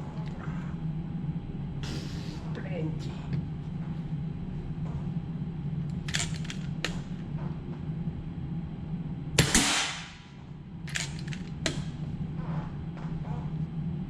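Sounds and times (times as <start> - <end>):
air rifle firing: 9.4 - 10.3.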